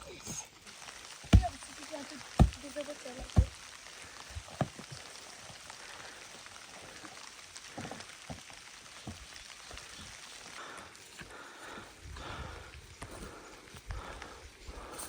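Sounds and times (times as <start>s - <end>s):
rain pattering: 0.0s - 14.9s
drips tapping: 1.3s - 1.7s, 2.3s - 3.6s.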